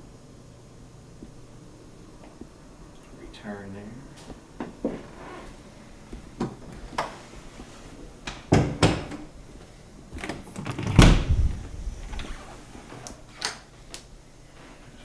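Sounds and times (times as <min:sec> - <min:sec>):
knocks and thumps: 0:10.6 - 0:12.3.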